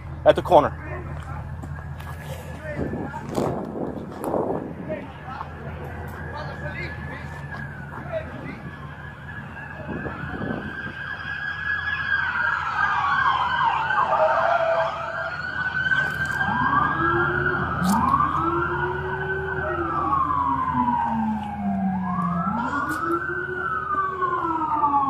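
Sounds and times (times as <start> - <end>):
emergency vehicle sirens wailing: 0.0 - 25.0.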